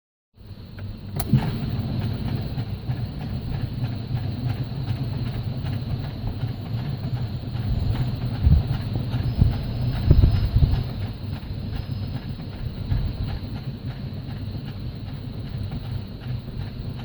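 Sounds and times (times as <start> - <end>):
car starter ticking: 0.8 - 6.5
sharp click: 1.2 - 1.8.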